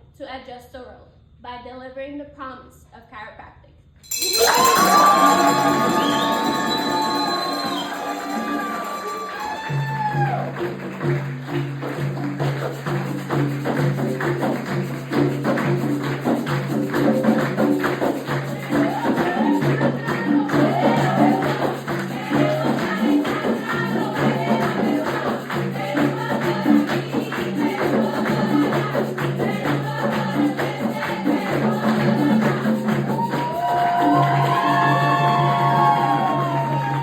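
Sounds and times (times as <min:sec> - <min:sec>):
upbeat song with percussion: 0:04.0 - 0:37.0
person singing: 0:18.5 - 0:37.0.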